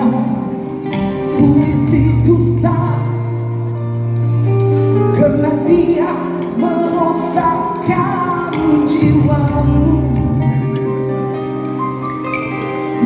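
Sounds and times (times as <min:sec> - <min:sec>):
person singing: 0:00.0 - 0:03.8, 0:05.1 - 0:11.6
live band playing pop: 0:00.0 - 0:13.0.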